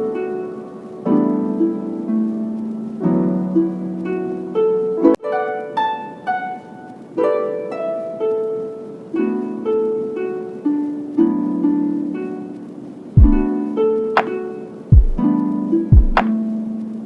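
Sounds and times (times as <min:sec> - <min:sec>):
melody of plucked notes: 0:00.0 - 0:17.0.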